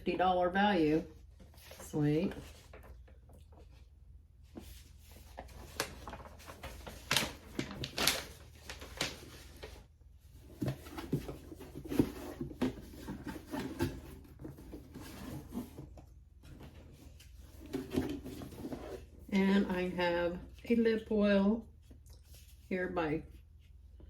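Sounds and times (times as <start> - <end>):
packaging rustling: 4.7 - 15.9.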